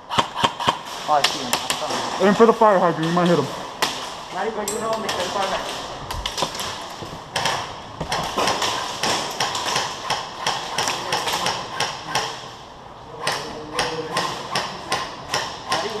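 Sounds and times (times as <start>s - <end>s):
airsoft gun shots: 0.1s - 1.1s.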